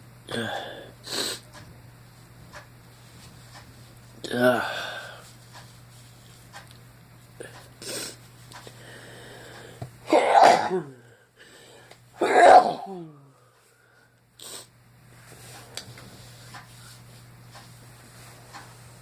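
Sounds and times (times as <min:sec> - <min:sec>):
person sneezing loudly: 0:10.0 - 0:11.0, 0:12.2 - 0:13.3.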